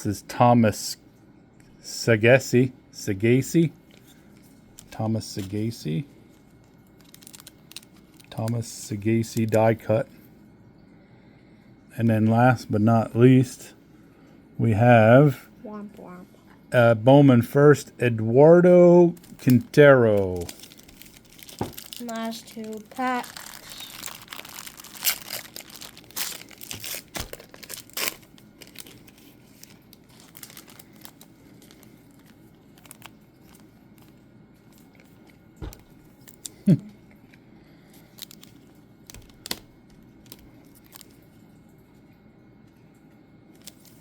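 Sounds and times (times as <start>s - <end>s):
card wrappers tearing and crinkling: 6.3s - 9.7s, 19.2s - 36.6s, 38.0s - 41.2s, 43.6s - 44.0s
cards handled with light clicks: 38.0s - 41.2s.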